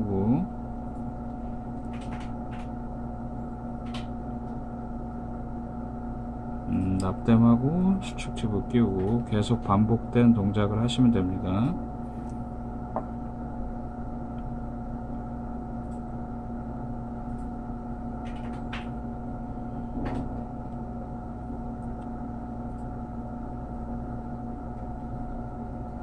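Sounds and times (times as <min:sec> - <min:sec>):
small machine humming: 0:00.0 - 0:26.0
faint clicks of small parts: 0:01.8 - 0:02.7, 0:03.8 - 0:04.1, 0:18.2 - 0:18.9.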